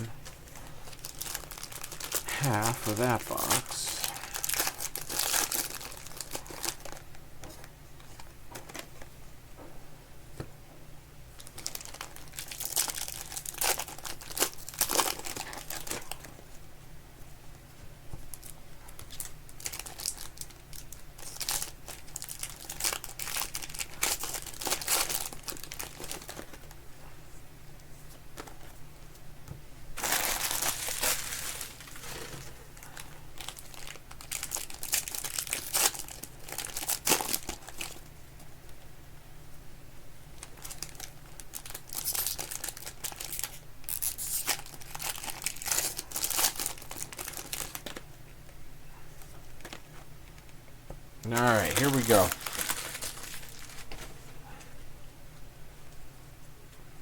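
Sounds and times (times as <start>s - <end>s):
wrappers tearing and crinkling: 0.8s - 7.1s, 11.4s - 16.3s, 18.3s - 26.8s, 30.0s - 38.0s, 40.4s - 48.0s, 51.3s - 54.0s.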